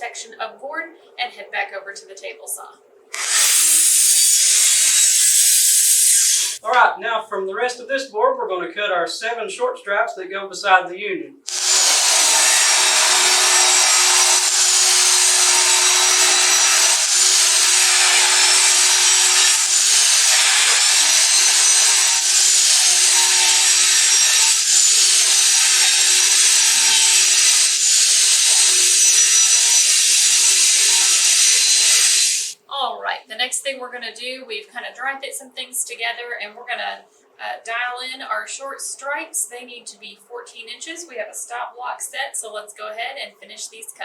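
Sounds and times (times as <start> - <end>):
table saw cutting wood: 3.1 - 6.6, 11.5 - 32.6.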